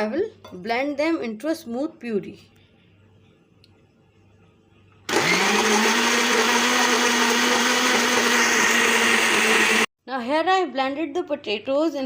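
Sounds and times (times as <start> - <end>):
blender motor whining: 5.1 - 9.9.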